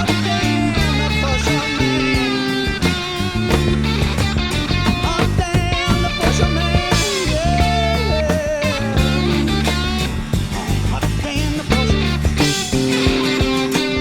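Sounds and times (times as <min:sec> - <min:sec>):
lead guitar with bent notes: 0:00.0 - 0:14.0
rock band instrumental: 0:00.0 - 0:14.0.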